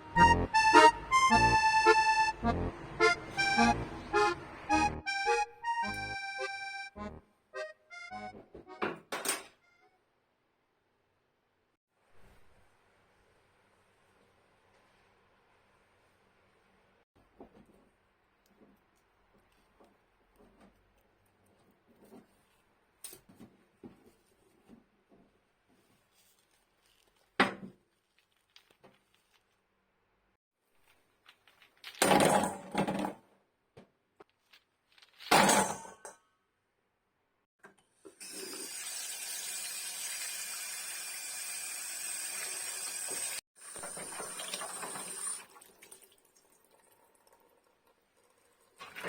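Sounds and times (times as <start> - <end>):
water tap running: 38.2 - 49.0.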